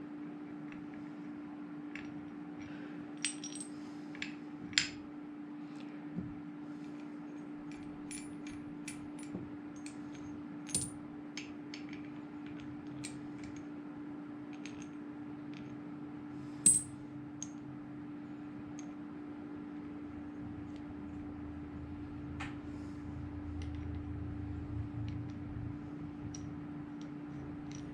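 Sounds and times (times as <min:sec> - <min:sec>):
steady low hum: 0:00.0 - 0:27.9
metal parts clinking: 0:16.7 - 0:16.9
sharp ringing clink: 0:16.7 - 0:17.0.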